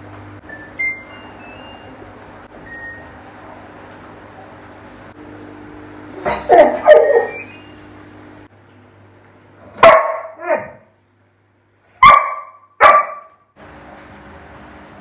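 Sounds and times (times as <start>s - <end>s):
dog barking: 6.3s - 7.4s, 9.8s - 10.8s, 12.0s - 13.4s.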